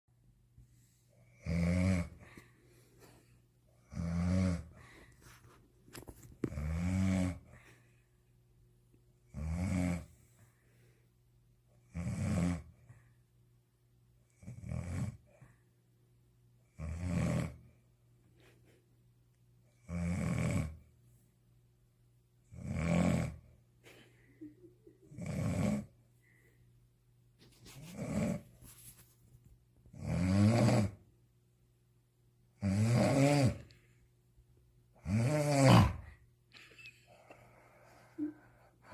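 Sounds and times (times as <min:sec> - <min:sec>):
man snoring: 0:01.2 - 0:02.4, 0:03.8 - 0:04.8, 0:06.4 - 0:07.6, 0:09.3 - 0:10.1, 0:11.8 - 0:12.8, 0:14.4 - 0:15.2, 0:16.7 - 0:17.7, 0:19.8 - 0:20.8, 0:22.5 - 0:23.4, 0:25.1 - 0:25.9, 0:27.9 - 0:28.4, 0:29.9 - 0:31.0, 0:32.6 - 0:33.7, 0:35.0 - 0:36.2.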